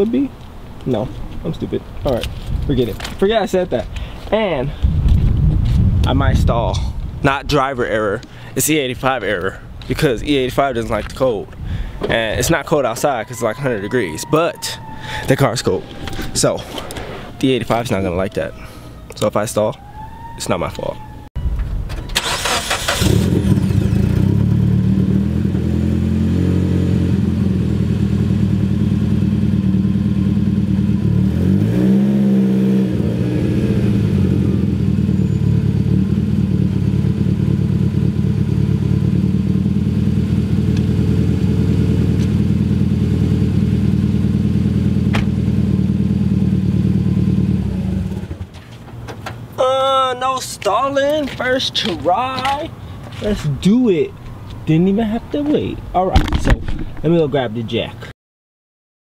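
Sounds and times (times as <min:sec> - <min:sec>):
car engine cranking and starting: 0:21.5 - 0:25.2
car engine idling: 0:34.7 - 0:48.4.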